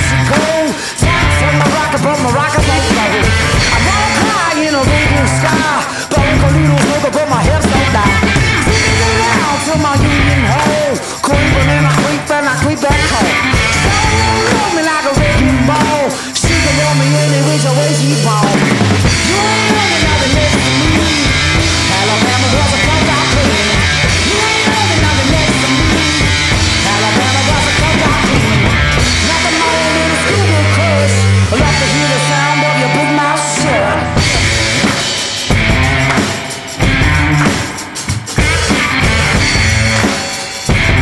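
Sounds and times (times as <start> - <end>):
distorted electric guitar: 0.0 - 41.0
pounding drum kit: 0.0 - 41.0
low bass line: 1.0 - 4.3, 4.9 - 5.6, 6.2 - 10.7, 12.9 - 14.6, 18.1 - 37.5, 38.4 - 40.1, 40.7 - 41.0.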